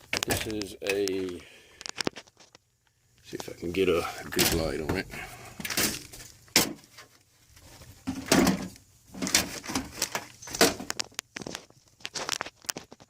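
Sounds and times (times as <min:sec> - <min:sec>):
objects knocking and scraping: 0:04.3 - 0:13.0.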